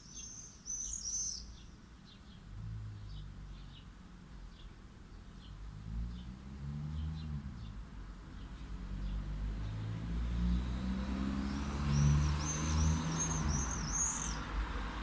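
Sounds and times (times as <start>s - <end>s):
car passing: 5.7s - 15.0s.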